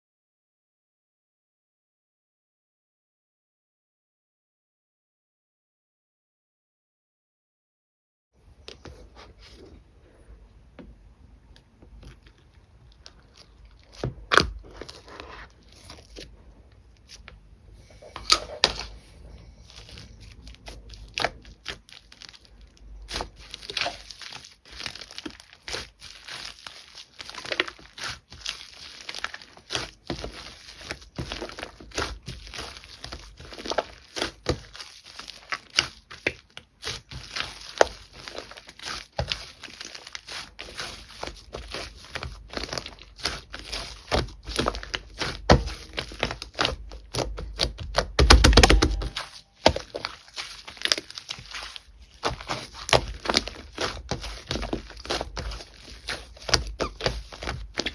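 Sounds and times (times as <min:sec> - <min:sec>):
slime crackling and popping: 0:19.7 - 0:57.9.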